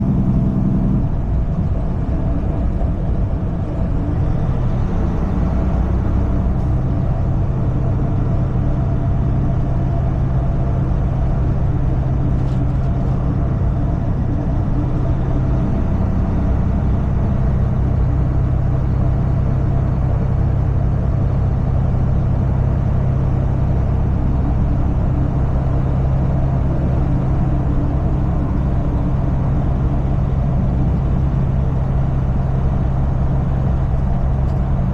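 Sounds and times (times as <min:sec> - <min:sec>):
road noise: 0:00.0 - 0:34.9
truck engine drone: 0:00.0 - 0:34.9.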